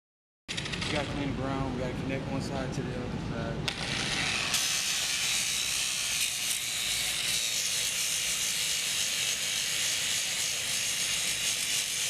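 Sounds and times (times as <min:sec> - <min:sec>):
angle grinder on steel: 0:03.7 - 0:12.0.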